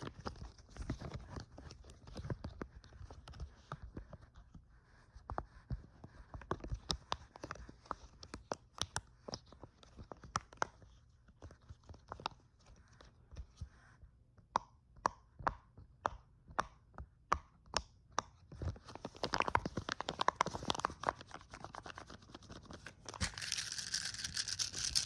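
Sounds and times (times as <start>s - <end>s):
tapping and scratching: 18.6s - 25.0s.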